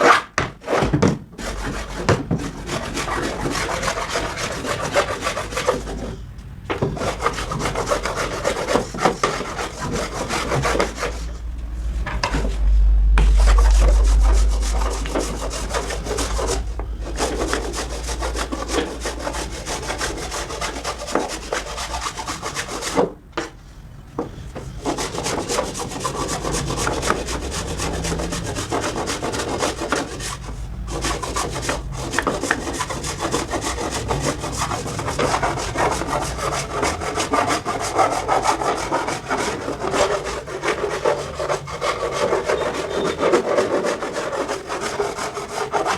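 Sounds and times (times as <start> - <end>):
wood scraping on a lathe: 0.0 - 23.2, 24.2 - 45.9
low motor hum: 7.5 - 20.6.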